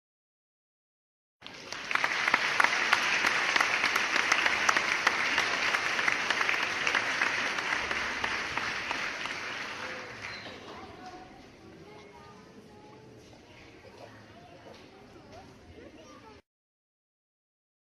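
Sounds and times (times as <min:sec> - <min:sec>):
audience applauding: 0:01.4 - 0:11.1.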